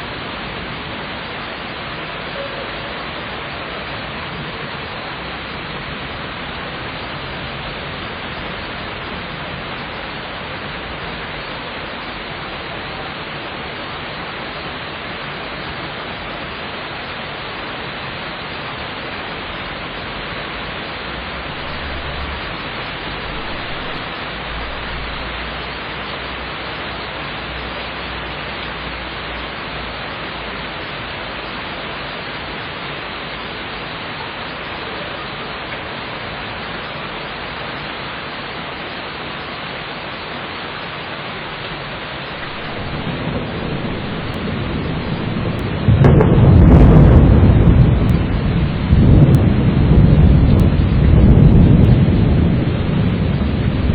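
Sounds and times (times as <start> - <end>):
steady rain hissing: 0.0 - 53.9
distant thunder rumble: 21.4 - 25.4, 42.4 - 53.9.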